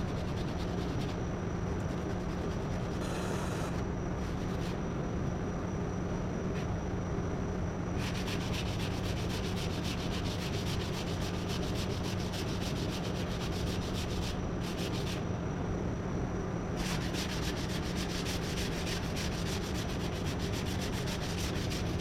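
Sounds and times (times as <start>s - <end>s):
hand sanding strokes: 0.0s - 1.2s, 8.0s - 15.2s, 16.8s - 22.0s.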